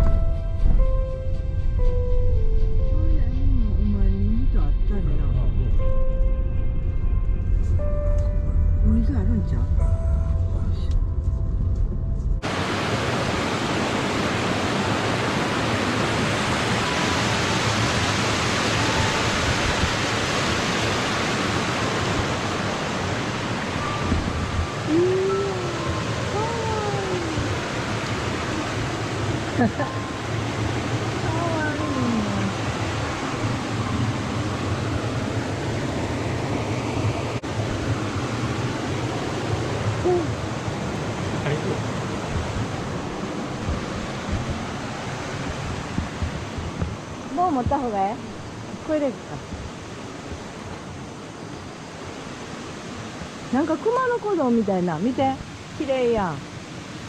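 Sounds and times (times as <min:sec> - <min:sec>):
low rumble: 0:00.0 - 0:13.5, 0:18.5 - 0:51.1
mountain water rushing: 0:12.4 - 0:57.0.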